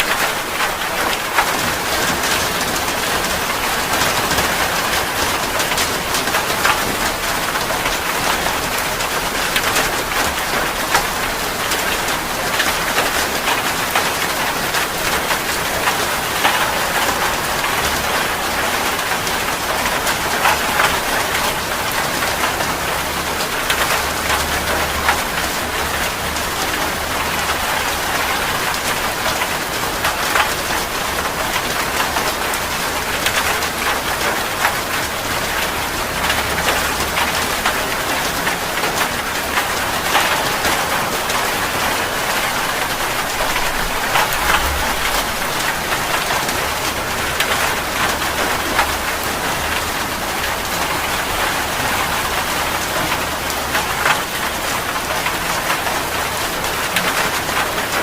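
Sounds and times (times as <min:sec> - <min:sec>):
heavy rain: 0:00.0 - 0:58.0
raindrop impacts: 0:38.5 - 0:50.0.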